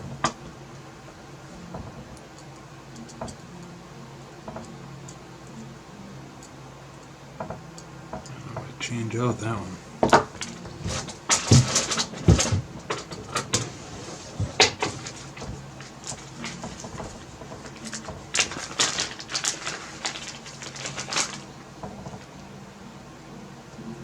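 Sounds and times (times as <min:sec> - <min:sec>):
small metal parts clattering: 0:10.1 - 0:22.2.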